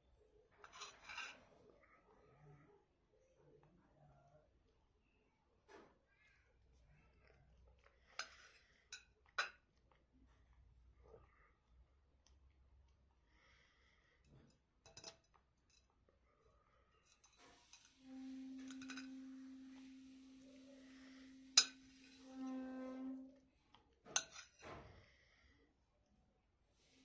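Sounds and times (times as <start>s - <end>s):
cutlery clinking against dishes: 8.2s - 9.7s, 14.8s - 15.9s, 17.0s - 19.4s, 21.4s - 22.2s, 24.1s - 24.8s
low humming tone: 18.0s - 23.5s.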